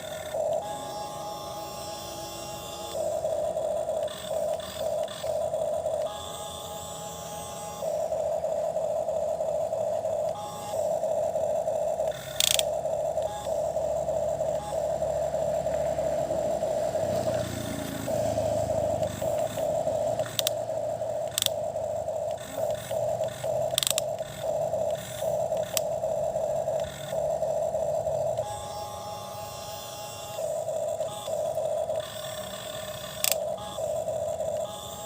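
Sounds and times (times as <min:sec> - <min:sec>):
small electric motor whining: 0:00.0 - 0:35.0
sharp clicks: 0:02.2 - 0:07.6, 0:11.9 - 0:15.0, 0:17.3 - 0:29.2, 0:29.8 - 0:35.0.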